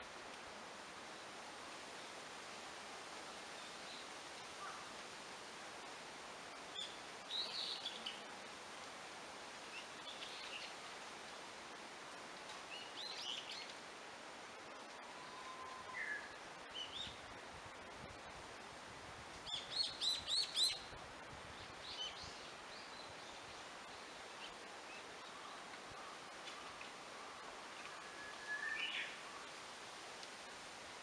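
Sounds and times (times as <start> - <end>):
steady background hiss: 0.0 - 31.0
small birds chirping: 6.5 - 8.3, 9.7 - 10.8, 12.6 - 13.8, 19.4 - 20.9, 21.6 - 29.6.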